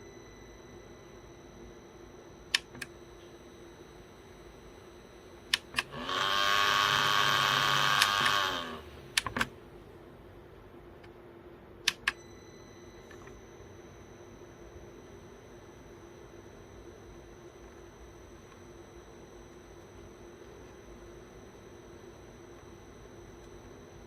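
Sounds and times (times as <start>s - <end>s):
faint steady hum: 0.0s - 24.0s
fan control clicks: 2.5s - 2.9s, 5.5s - 5.9s, 8.0s - 8.5s, 9.1s - 9.5s, 11.8s - 12.2s
fan motor spinning: 5.5s - 9.5s.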